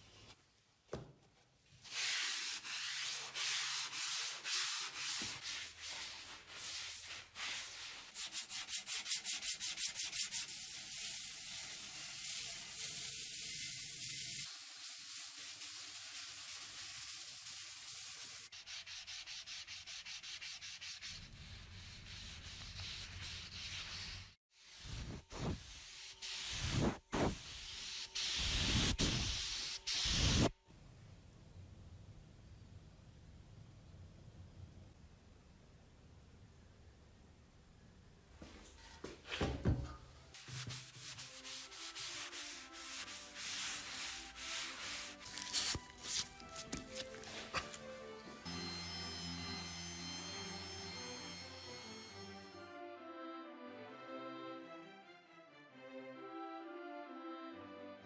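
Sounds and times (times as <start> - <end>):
hand sanding strokes: 1.8 - 30.5, 40.4 - 47.8.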